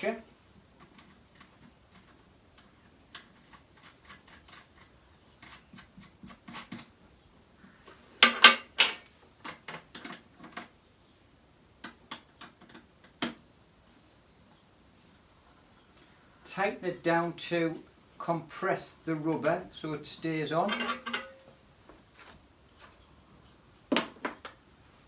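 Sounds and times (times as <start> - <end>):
small metal parts clinking: 20.7 - 21.6.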